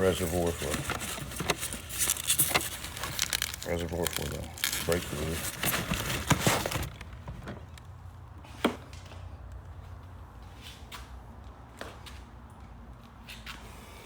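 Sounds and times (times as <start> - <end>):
plastic packaging crinkling: 0.0 - 7.8.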